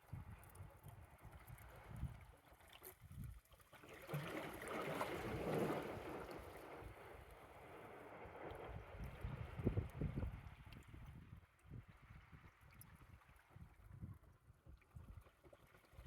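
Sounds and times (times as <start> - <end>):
wind buffeting microphone: 8.4 - 14.4.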